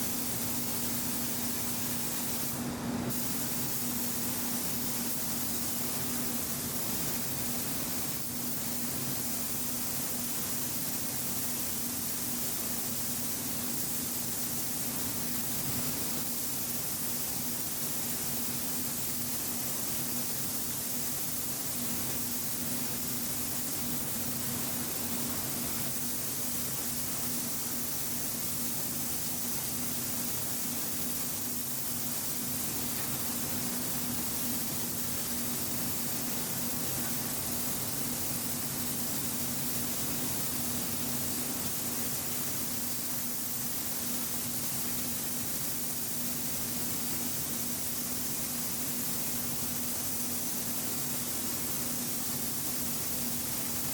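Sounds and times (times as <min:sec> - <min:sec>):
paint spray gun hissing: 0:00.0 - 0:53.9.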